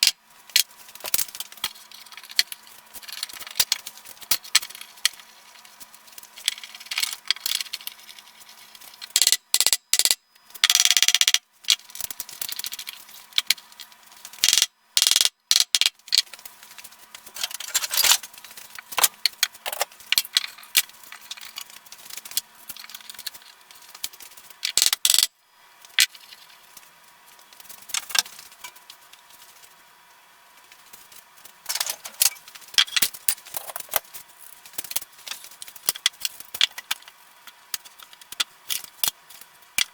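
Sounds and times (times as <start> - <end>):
tools clicking and rattling: 17.2 - 25.3, 31.7 - 34.2.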